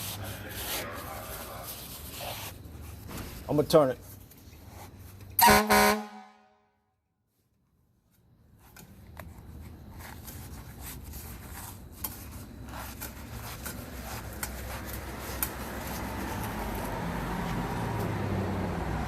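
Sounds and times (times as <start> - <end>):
rustling: 8.1 - 17.6.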